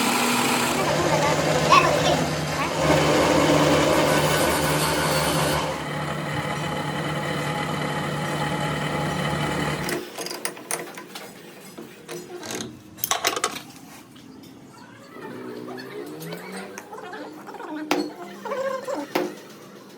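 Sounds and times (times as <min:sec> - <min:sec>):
workshop machine humming: 0:00.0 - 0:10.2.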